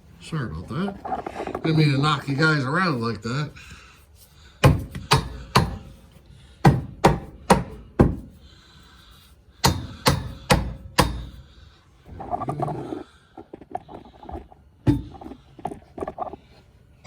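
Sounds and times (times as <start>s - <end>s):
rubber mallet striking metal: 9.6s - 11.4s.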